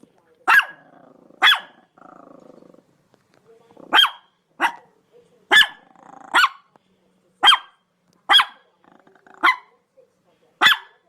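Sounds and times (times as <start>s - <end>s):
dog barking: 0.4s - 1.9s, 3.9s - 4.9s, 5.5s - 6.7s, 7.4s - 8.6s, 9.3s - 9.8s, 10.6s - 11.0s.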